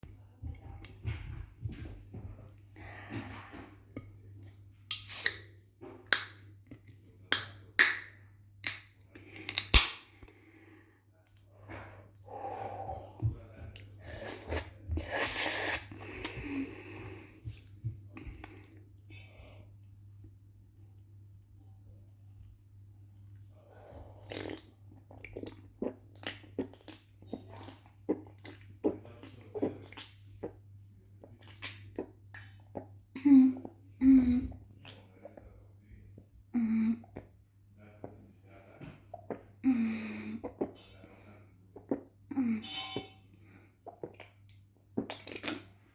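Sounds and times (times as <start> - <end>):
low electrical hum: 0.0 - 45.9
person drinking and gulping: 11.3 - 20.0, 23.3 - 45.9.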